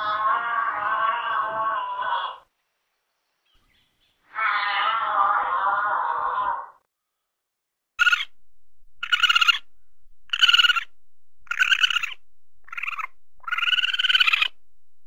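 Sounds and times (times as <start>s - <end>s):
high trilled animal call: 8.0s - 14.7s.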